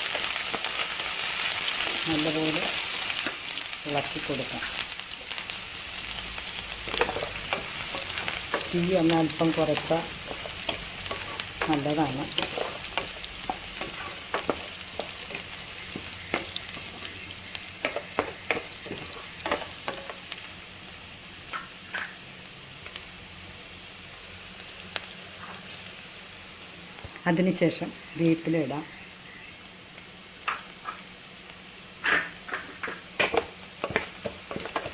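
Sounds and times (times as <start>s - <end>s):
onion sizzling in a pan: 0.0s - 34.9s.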